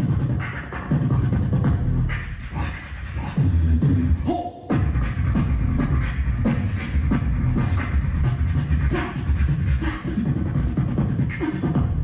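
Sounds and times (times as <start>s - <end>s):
beatboxing: 0.0s - 12.0s.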